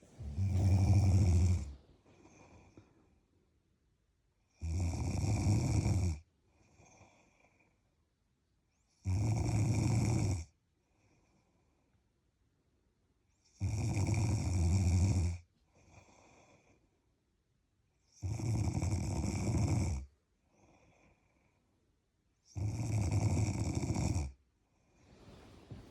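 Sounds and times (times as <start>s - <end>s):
faint breath: 0.0s - 3.3s, 25.0s - 25.9s
person snoring: 0.1s - 1.8s.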